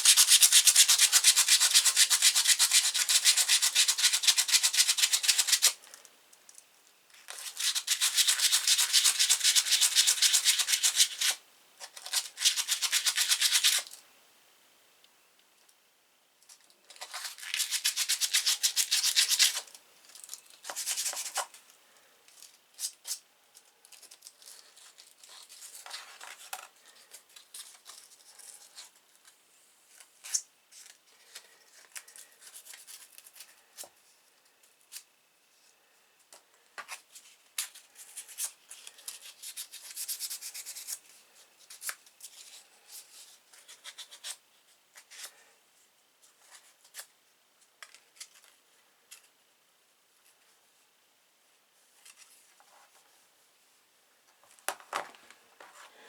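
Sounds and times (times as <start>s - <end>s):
knife blade rubbed with abrasive: 0.0s - 5.8s.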